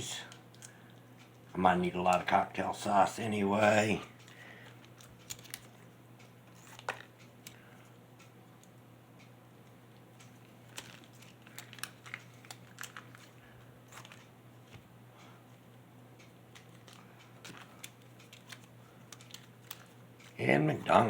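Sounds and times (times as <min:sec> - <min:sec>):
plastic packets crinkling and tearing: 0:04.9 - 0:05.8, 0:10.7 - 0:14.3, 0:16.6 - 0:20.4.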